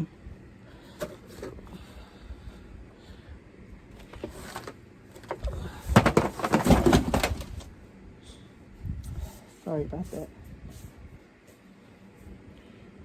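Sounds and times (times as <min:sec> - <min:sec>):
rustling scraping and bumping: 0:03.9 - 0:07.8.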